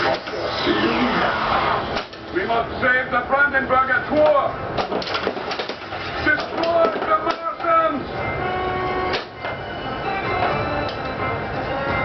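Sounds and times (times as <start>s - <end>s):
electronic pinball game music: 8.0s - 12.0s.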